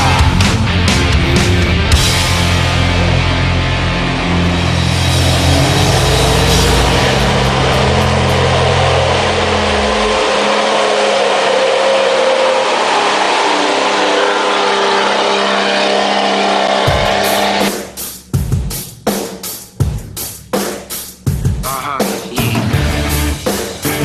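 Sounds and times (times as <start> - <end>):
vehicle engine running: 0.0 - 17.8
loud rock music: 0.0 - 24.0.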